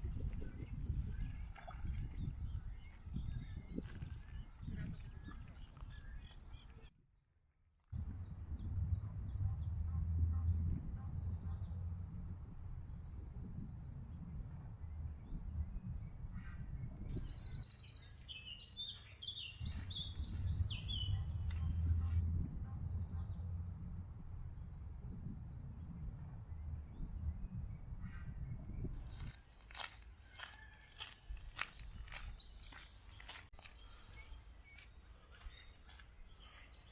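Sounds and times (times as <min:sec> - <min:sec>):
songbirds singing: 0:00.0 - 0:06.9, 0:08.0 - 0:36.9
steady low rumble: 0:08.0 - 0:17.8, 0:19.6 - 0:29.3.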